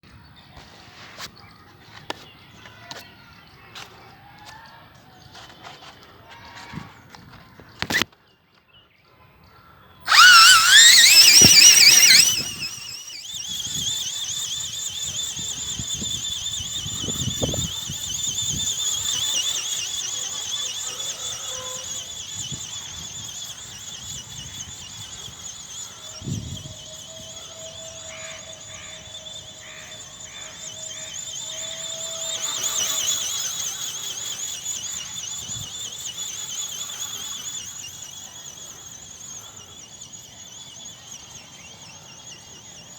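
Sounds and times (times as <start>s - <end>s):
small electric motor whining: 10.1s - 42.9s.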